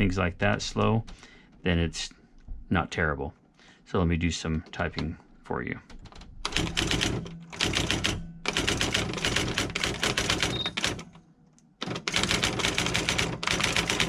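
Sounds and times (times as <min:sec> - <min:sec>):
typewriter motor hum: 0:06.5 - 0:11.1, 0:11.8 - 0:14.0.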